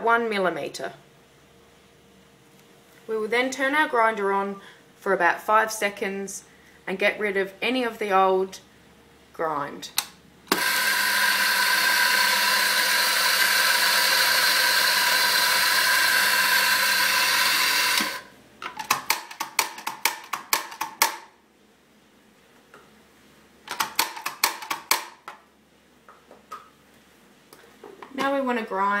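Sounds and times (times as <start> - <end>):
coffee grinder running: 10.5 - 18.3.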